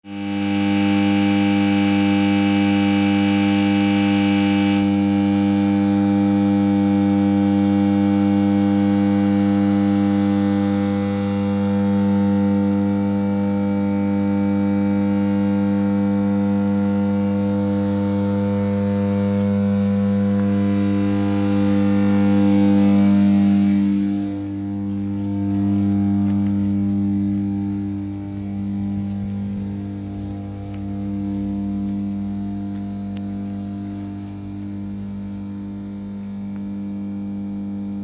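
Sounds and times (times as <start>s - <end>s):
transformer humming: 17.6s - 35.4s.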